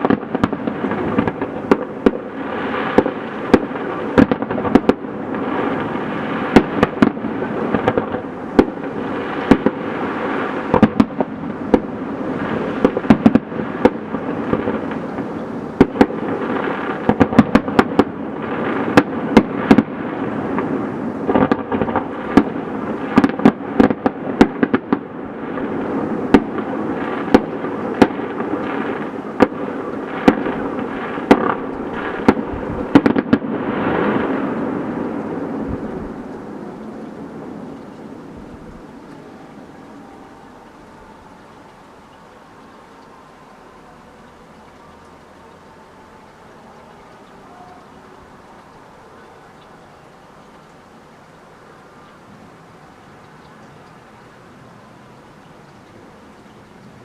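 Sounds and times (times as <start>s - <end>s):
fireworks bangs: 0.0s - 41.3s
fireworks crackling: 0.0s - 43.1s.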